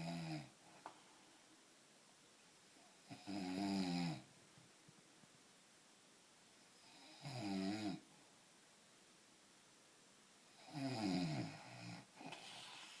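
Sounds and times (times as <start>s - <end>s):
man snoring: 10.6s - 12.1s.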